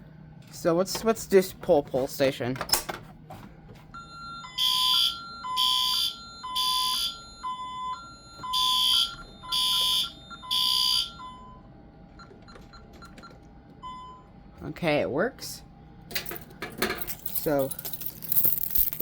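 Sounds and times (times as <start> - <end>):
fire alarm horn blasts: 4.0 - 11.6.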